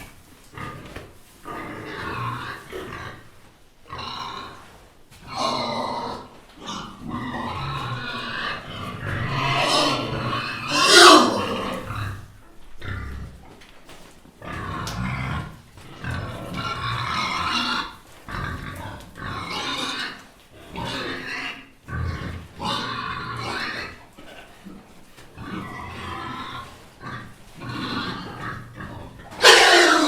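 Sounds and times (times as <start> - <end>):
piglets grunting: 3.9 - 13.6, 25.4 - 30.0
piglet squealing: 29.4 - 30.0.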